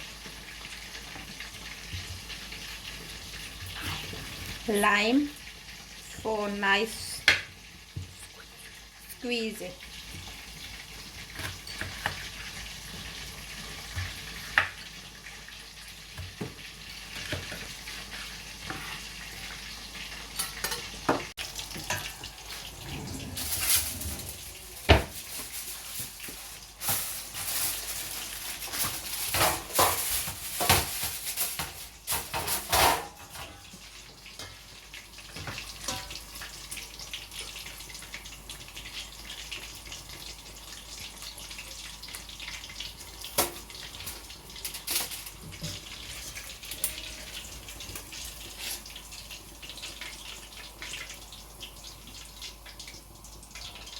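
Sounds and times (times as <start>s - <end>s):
oil sizzling in a frying pan: 0.0s - 53.9s
utensils and dishes clinking: 11.3s - 12.4s, 20.3s - 33.8s, 35.4s - 36.3s, 43.3s - 48.9s.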